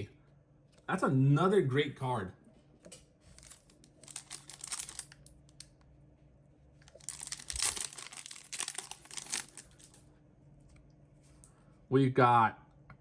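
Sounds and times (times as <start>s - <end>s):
foil wrapper crinkling and tearing: 3.3s - 5.7s, 6.8s - 10.0s.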